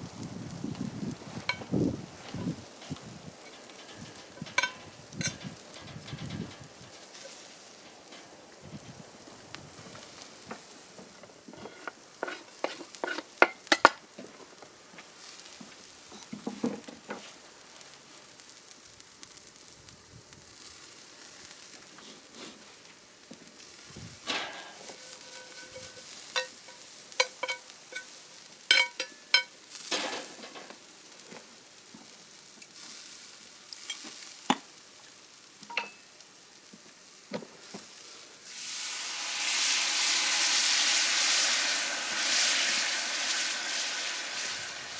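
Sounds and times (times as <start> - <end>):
food sizzling in a pan: 0.0 - 44.9
metal utensil knocking on pan: 4.4 - 6.0.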